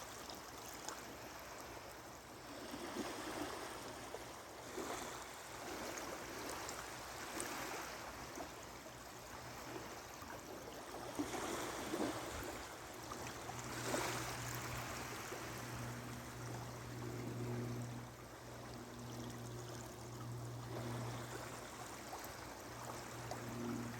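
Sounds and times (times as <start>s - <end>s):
small waves lapping on sand: 0.0s - 23.9s
faint low hum: 10.8s - 23.9s.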